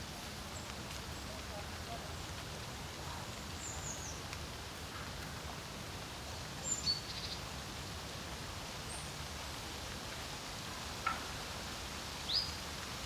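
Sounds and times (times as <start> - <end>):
songbird chirps: 3.1 - 4.4, 6.3 - 7.5, 12.2 - 12.7.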